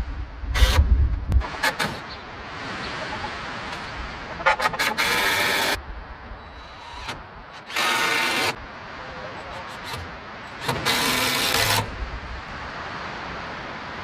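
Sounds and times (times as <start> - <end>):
wind noise: 0.0 - 7.8, 10.8 - 14.0
power drill driving screws: 4.5 - 5.8, 6.6 - 8.6, 9.7 - 11.9.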